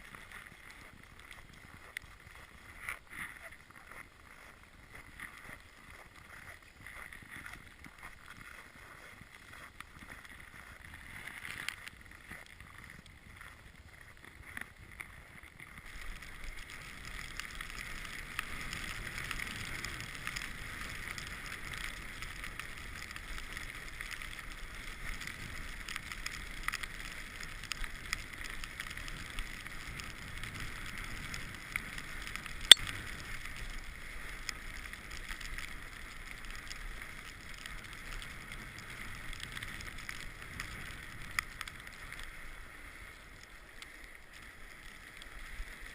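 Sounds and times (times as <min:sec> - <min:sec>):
bike rolling and rattling: 0:00.0 - 0:45.9.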